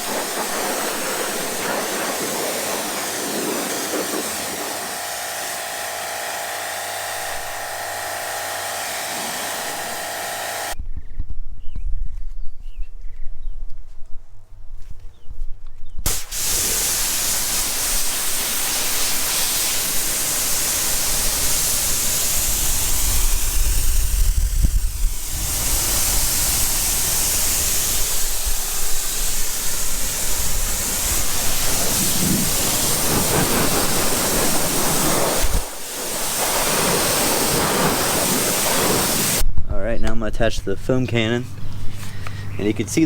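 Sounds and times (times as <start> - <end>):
pressure washer water jet hissing: 0.0 - 10.8, 16.1 - 39.4.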